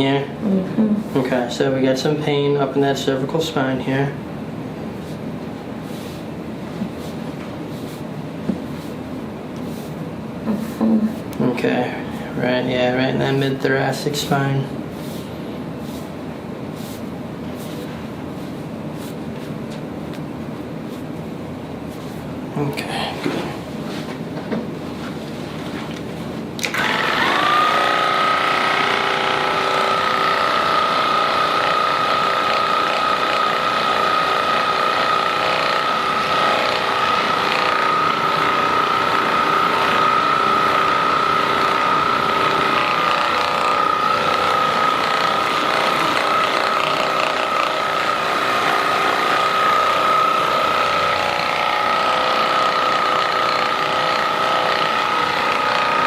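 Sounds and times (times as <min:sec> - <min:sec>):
massage gun motor whine: 0:26.6 - 0:56.0.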